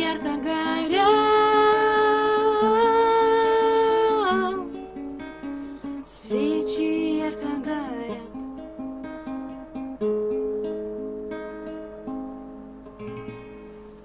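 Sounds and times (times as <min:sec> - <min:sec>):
person singing: 0:00.0 - 0:04.8, 0:06.0 - 0:08.4
fingerpicked acoustic guitar: 0:00.0 - 0:14.0.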